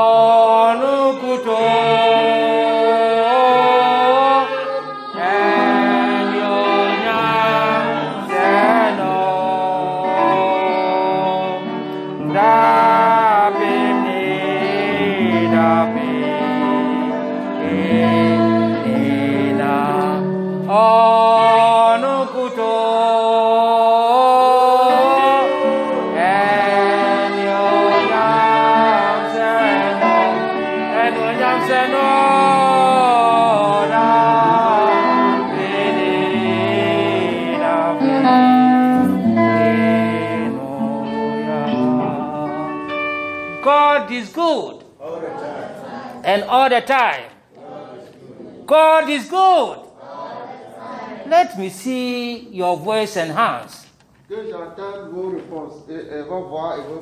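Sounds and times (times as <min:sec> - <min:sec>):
instrumental accompaniment: 0:00.0 - 0:45.0
voices singing gospel song: 0:00.0 - 0:54.0.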